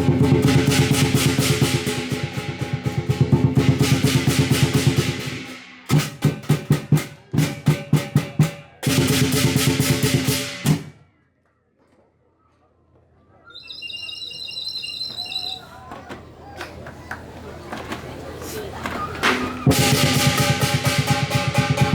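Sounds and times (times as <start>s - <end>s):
large drum beaten fast: 0.0s - 10.9s, 19.7s - 21.9s
high warbling whistle-like tone: 13.5s - 15.8s.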